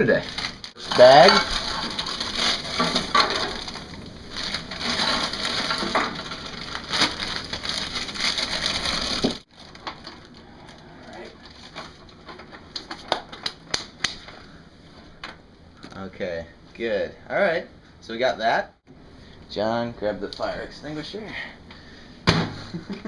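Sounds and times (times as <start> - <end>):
plastic bags crinkling: 0.0 - 12.7.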